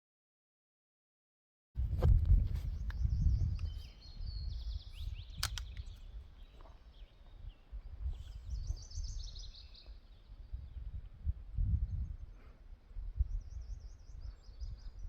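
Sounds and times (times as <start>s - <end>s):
wind rumble on microphone: 1.8s - 15.0s
songbird chirping: 2.4s - 15.0s
sharp click: 5.3s - 6.0s.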